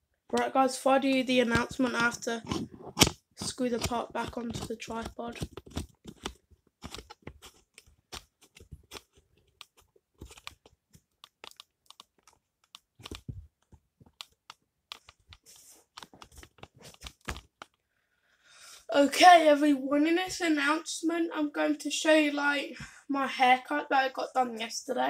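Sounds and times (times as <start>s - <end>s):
tripod part clicking and scraping: 1.5s - 4.6s.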